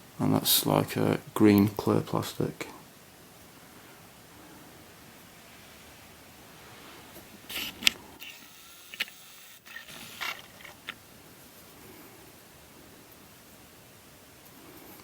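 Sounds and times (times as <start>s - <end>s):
rustling scrape: 5.4s - 8.2s
handling clicks and scrapes: 7.2s - 11.0s.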